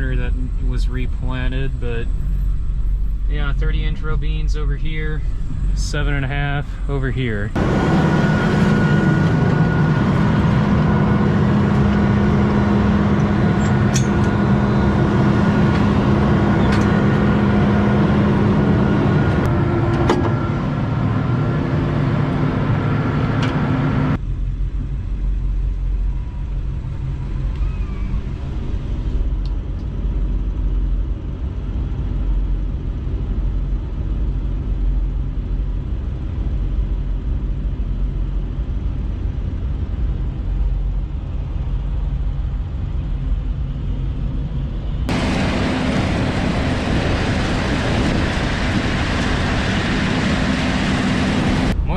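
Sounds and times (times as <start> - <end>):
heavy machinery humming and whining: 0.0 - 51.9
muffled engine rumble: 0.0 - 51.9.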